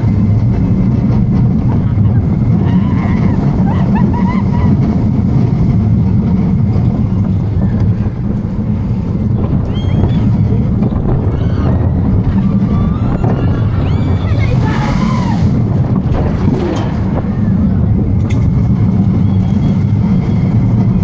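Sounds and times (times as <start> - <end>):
roller coaster rumbling on track: 0.0 - 21.0
wind on microphone: 0.0 - 21.0
high squeals: 9.6 - 10.6, 11.2 - 15.8.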